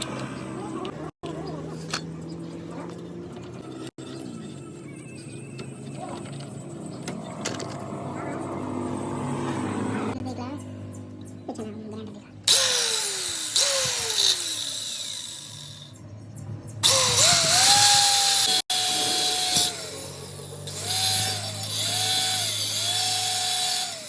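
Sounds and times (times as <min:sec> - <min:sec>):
electric power tool running: 0:12.5 - 0:16.0, 0:16.8 - 0:24.0.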